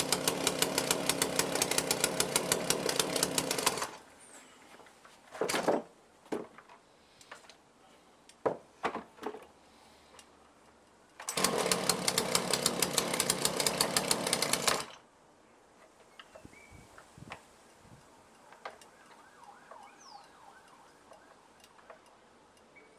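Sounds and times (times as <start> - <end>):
chainsaw engine running: 0.0 - 4.0, 11.3 - 15.0.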